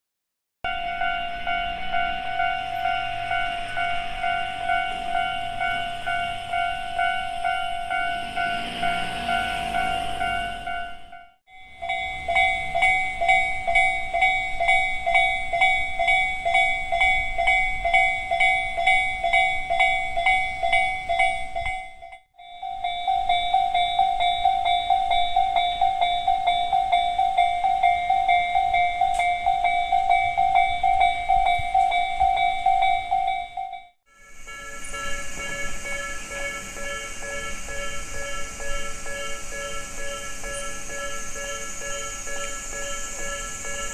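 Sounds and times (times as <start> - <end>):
level crossing bells ringing: 0.7 - 43.9.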